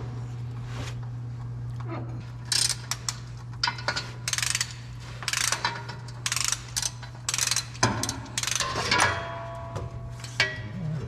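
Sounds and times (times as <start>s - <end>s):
steady low hum: 0.0s - 11.0s
ratchet wrench clicking: 2.4s - 8.7s.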